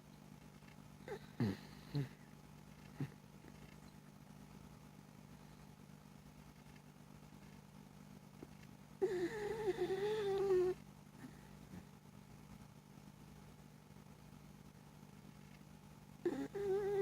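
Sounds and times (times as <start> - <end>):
dog whistling snore: 16.3 - 17.0.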